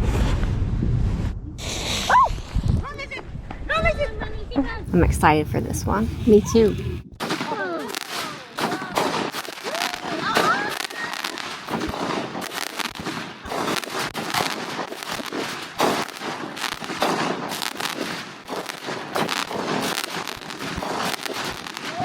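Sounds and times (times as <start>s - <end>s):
firework hiss: 1.6s - 2.3s
firework crackling: 4.9s - 22.0s
loud firework cracks: 7.2s - 22.0s.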